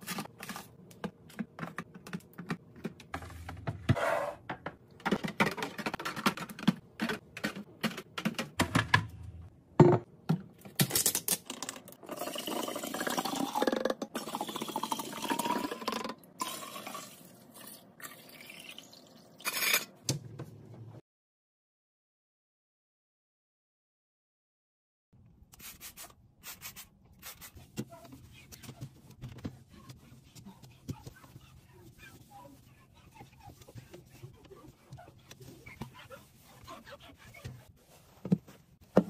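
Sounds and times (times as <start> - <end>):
items clicking and knocking: 0.4 - 12.0
liquid pouring: 12.0 - 19.4.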